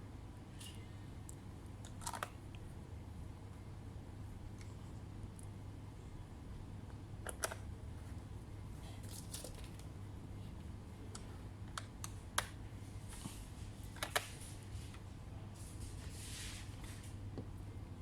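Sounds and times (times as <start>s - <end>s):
steady low hum: 0.0s - 18.0s
plastic clicks and taps on laptop: 13.9s - 14.4s.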